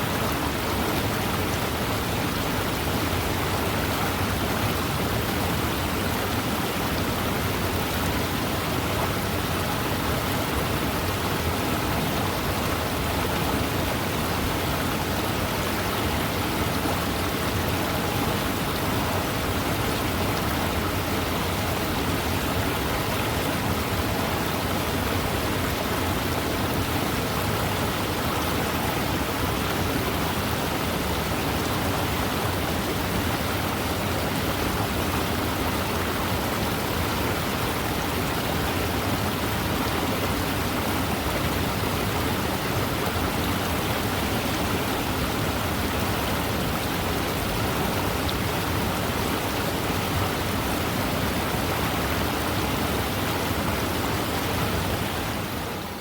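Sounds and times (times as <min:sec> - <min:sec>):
waterfall rushing: 0:00.0 - 0:56.0.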